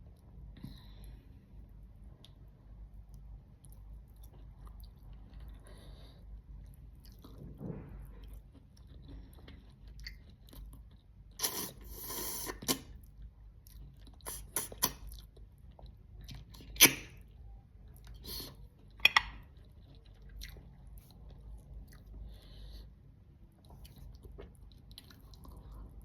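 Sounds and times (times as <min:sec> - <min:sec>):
chewing and crunching food: 0:00.0 - 0:26.0.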